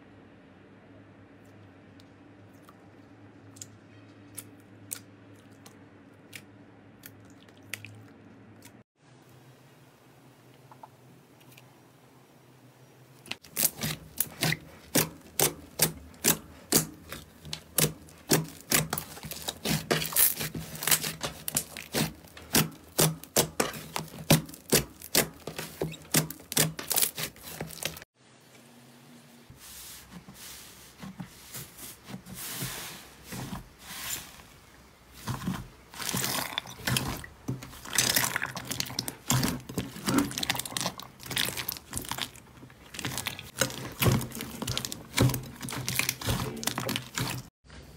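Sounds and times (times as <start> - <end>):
slime crackling and crinkling: 13.2 - 28.1, 30.8 - 47.6.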